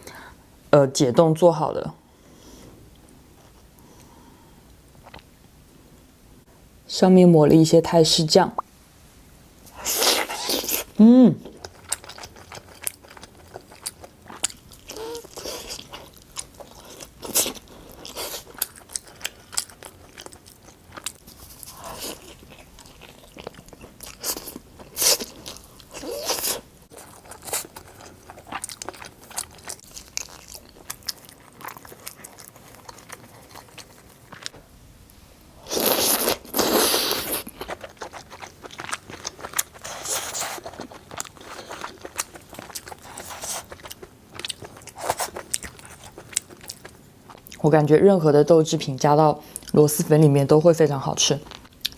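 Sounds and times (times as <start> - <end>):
person chewing pizza: 9.8 - 34.6, 35.6 - 47.6, 51.5 - 51.9.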